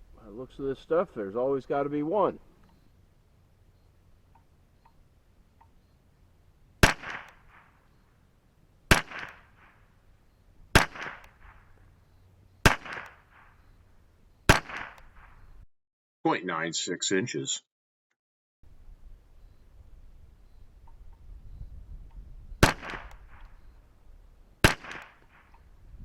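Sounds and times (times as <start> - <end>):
rifle shots with echo: 6.8 - 8.0, 8.9 - 10.0, 10.7 - 11.8, 12.6 - 13.8, 14.5 - 15.5, 22.6 - 23.7, 24.6 - 25.6.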